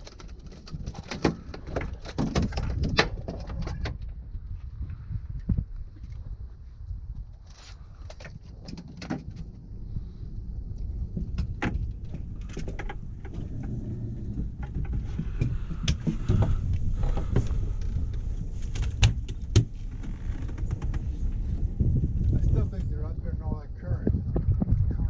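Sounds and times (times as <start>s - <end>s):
steady low rumble: 1.4s - 25.0s
sharp clicks and knocks: 11.2s - 21.6s.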